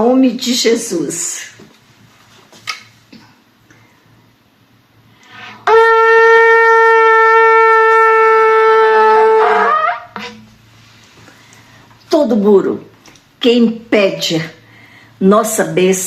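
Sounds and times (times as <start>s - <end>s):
shofar blowing long note: 5.4s - 10.4s.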